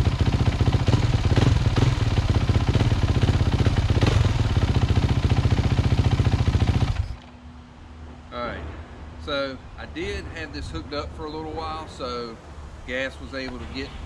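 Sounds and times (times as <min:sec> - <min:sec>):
motorbike engine idling: 0:00.0 - 0:07.3.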